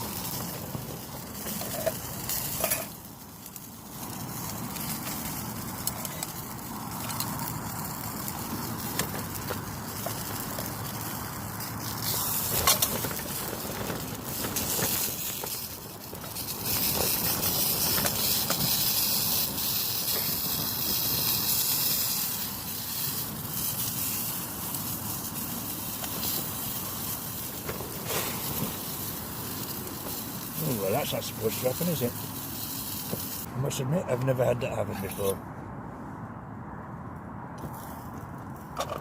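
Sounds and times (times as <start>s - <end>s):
steak sizzling in a pan: 0.0s - 12.9s, 17.8s - 33.5s.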